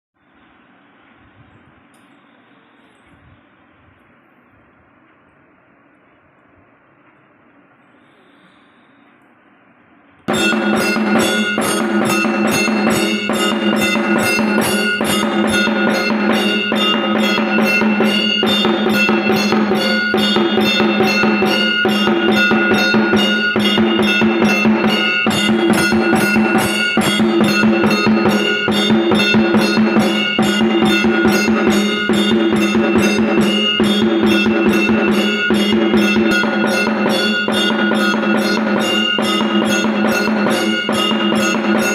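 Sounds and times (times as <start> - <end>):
temple bell rung rapidly: 10.3 - 41.9.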